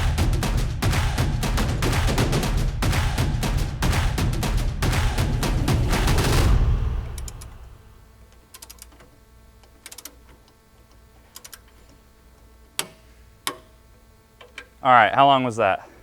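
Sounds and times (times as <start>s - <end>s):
loud passage: 0.0s - 8.2s.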